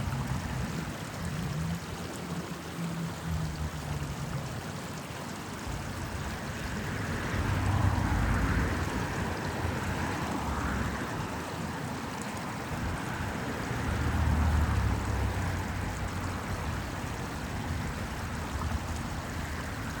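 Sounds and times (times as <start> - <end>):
small stream running: 0.0 - 20.0
road traffic rumbling: 6.0 - 20.0.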